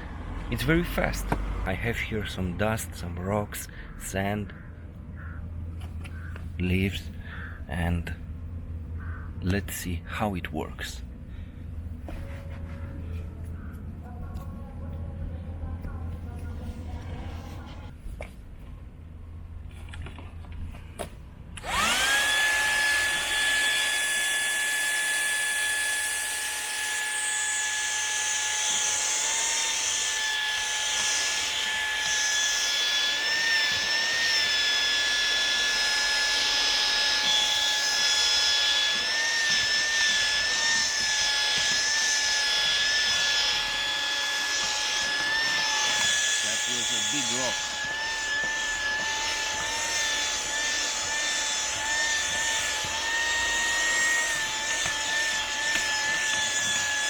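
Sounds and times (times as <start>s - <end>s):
vacuum cleaner motor whine: 21.6s - 57.0s.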